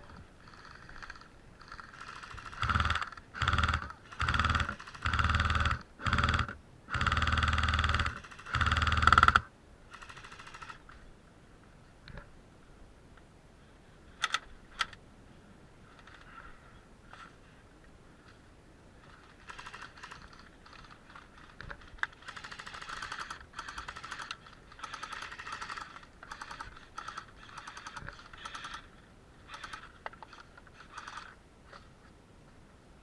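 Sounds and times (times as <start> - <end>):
rapid mechanical clicking bursts: 0.4 - 10.8, 19.0 - 28.9, 29.5 - 31.4.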